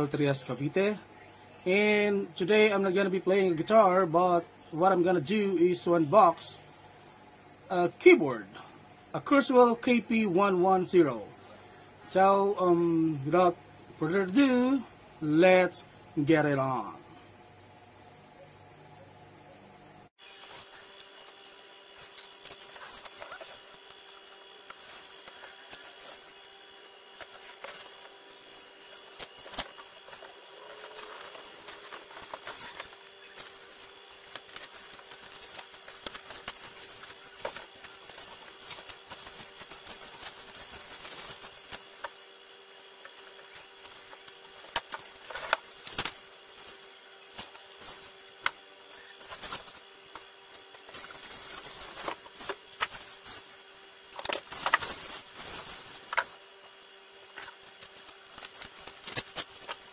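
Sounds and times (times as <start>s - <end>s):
packaging rustling: 20.2s - 59.9s.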